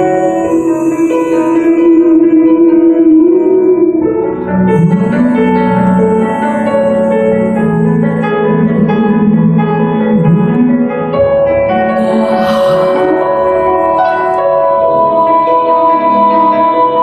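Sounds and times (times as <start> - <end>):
keyboard music: 0.0 - 17.0
harp-like plucked notes: 10.0 - 11.1, 11.8 - 15.0.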